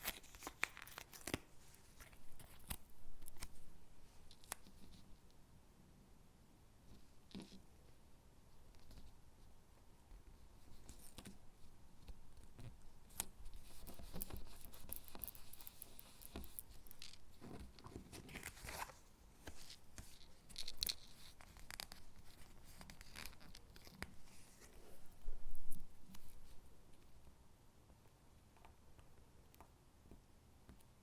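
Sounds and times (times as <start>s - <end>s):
paper rustling: 13.5s - 26.6s.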